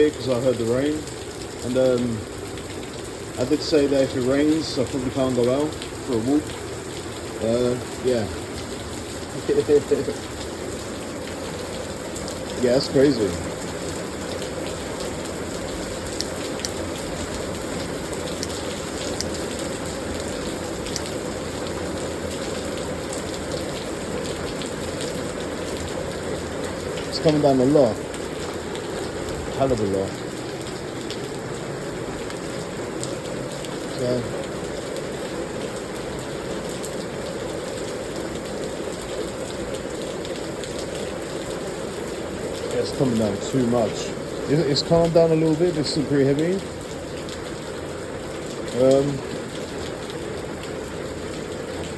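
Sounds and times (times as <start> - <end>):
heavy rain pouring: 0.0 - 51.9.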